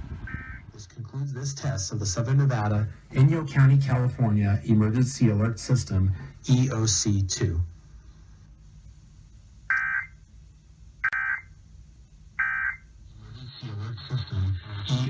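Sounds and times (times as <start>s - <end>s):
electronic data burst screeches: 0.0s - 0.8s, 9.7s - 10.1s, 12.4s - 15.0s
person speaking: 0.8s - 7.8s.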